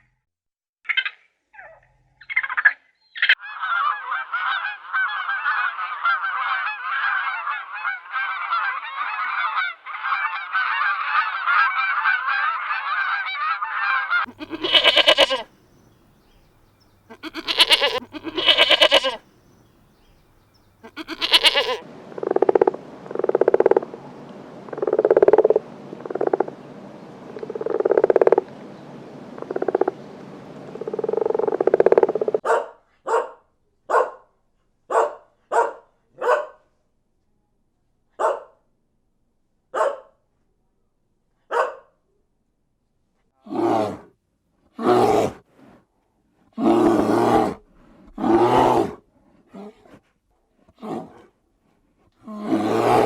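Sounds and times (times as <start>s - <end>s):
animal calls: 0.9s - 26.6s, 46.6s - 49.0s, 52.5s - 53.0s
steady background hiss: 14.3s - 31.7s.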